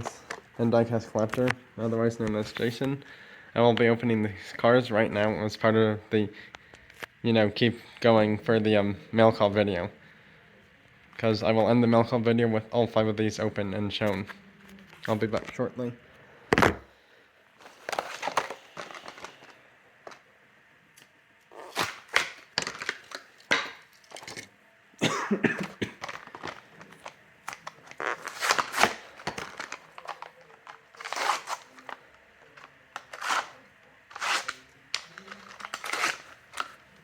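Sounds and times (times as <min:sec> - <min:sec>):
plastic packaging torn open: 0:21.5 - 0:24.4, 0:26.0 - 0:36.8.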